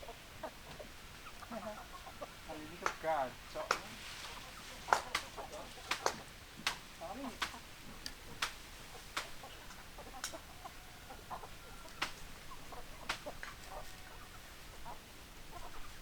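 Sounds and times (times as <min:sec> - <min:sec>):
chickens clucking: 0:00.0 - 0:16.0
sharp taps: 0:04.9 - 0:06.8.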